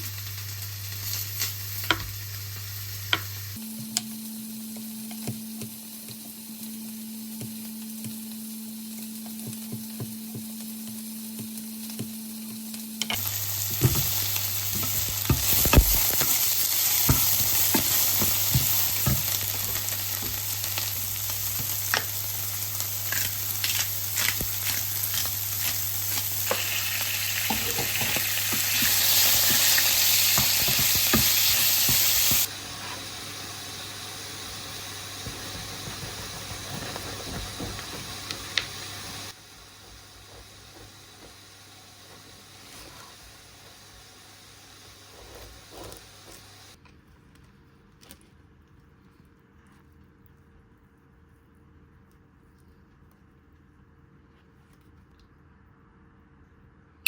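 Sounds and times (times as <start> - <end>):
food sizzling in a pan: 0.0 - 46.8.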